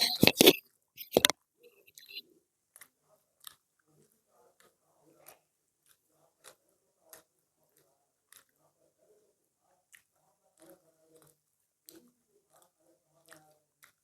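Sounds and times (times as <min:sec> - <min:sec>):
mouth clicks: 0:00.0 - 0:02.2, 0:09.9 - 0:14.0
faint chewing: 0:00.0 - 0:14.0.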